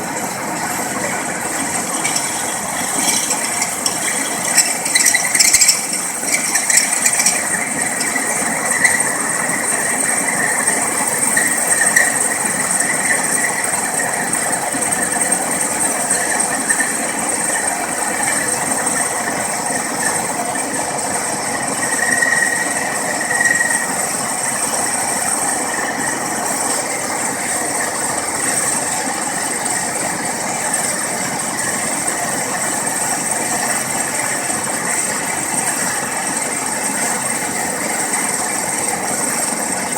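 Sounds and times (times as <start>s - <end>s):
machine running with high whine: 0.0s - 28.8s.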